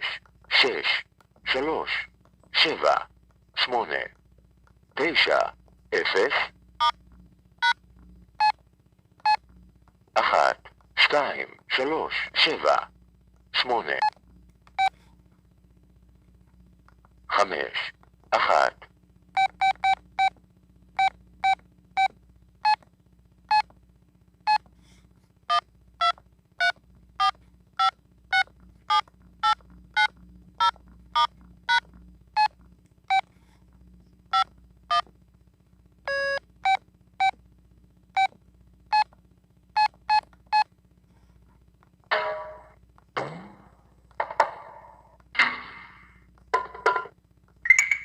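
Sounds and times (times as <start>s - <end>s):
phone keypad beeps: 47.7s - 48.0s.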